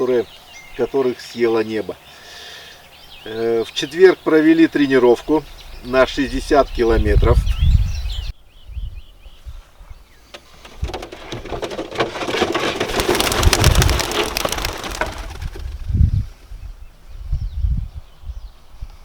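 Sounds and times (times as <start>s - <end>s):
wind buffeting microphone: 4.9s - 11.6s, 12.8s - 19.0s
dense crackling rustle: 10.4s - 16.1s.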